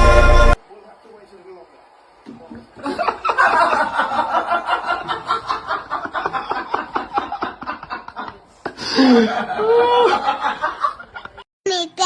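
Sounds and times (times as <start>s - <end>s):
person laughing: 4.6s - 10.4s.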